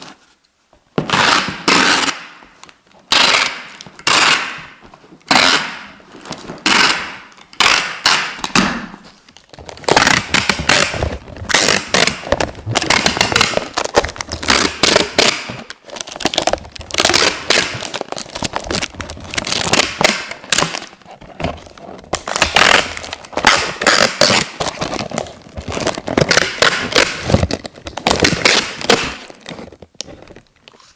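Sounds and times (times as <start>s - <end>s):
adhesive tape ripping off roll: 9.7s - 21.0s, 22.2s - 29.6s.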